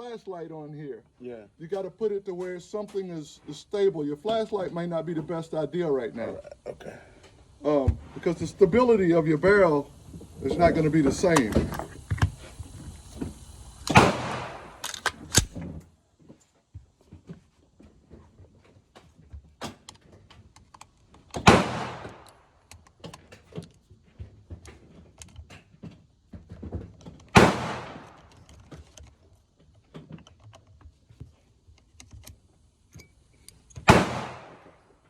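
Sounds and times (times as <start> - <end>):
clicks: 10.5 - 15.6
fainter sharp shots: 13.9 - 15.6, 21.4 - 22.2, 27.4 - 28.2, 33.9 - 34.8
loud rifle shots: 13.9 - 15.6, 21.4 - 22.2, 27.3 - 28.2, 33.8 - 34.7.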